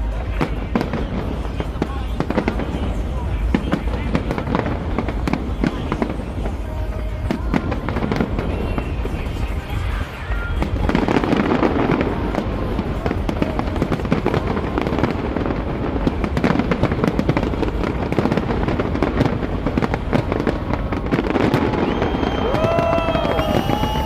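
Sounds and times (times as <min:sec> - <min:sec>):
fireworks bangs and crackles: 0:00.0 - 0:24.0.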